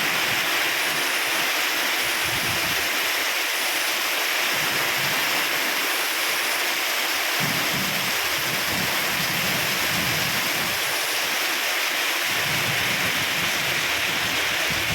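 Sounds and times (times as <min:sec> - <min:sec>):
storm wind blowing: 0:02.0 - 0:02.9, 0:07.4 - 0:10.9, 0:12.3 - 0:14.9
wind gusts buffeting microphone: 0:02.0 - 0:02.9, 0:07.4 - 0:10.9, 0:12.3 - 0:14.9.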